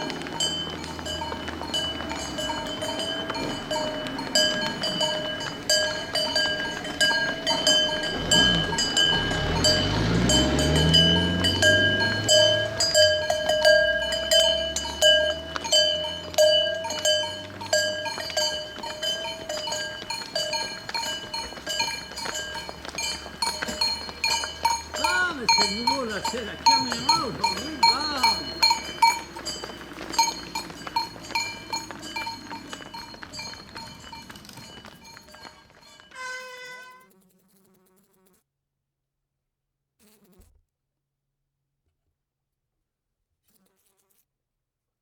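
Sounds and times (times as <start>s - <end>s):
cowbells clanking: 0.0s - 37.0s.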